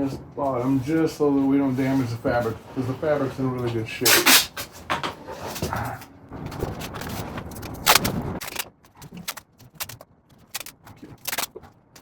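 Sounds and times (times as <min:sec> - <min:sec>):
tape ripping: 0:04.0 - 0:04.7.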